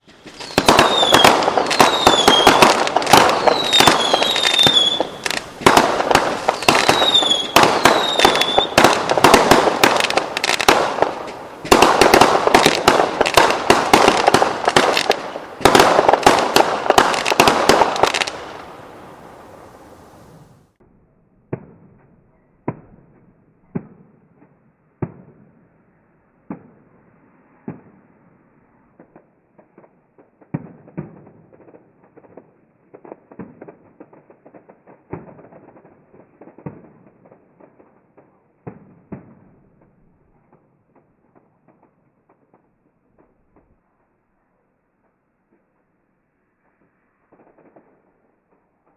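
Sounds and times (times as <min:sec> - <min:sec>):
firework pops: 0:00.0 - 0:18.8, 0:29.0 - 0:44.1
fireworks bangs and crackles: 0:00.0 - 0:48.9
whistle fireworks: 0:00.0 - 0:48.9.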